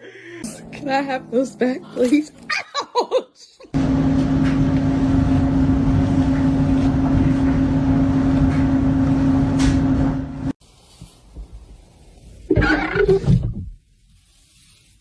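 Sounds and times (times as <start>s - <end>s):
loud machine hum: 3.8s - 10.6s.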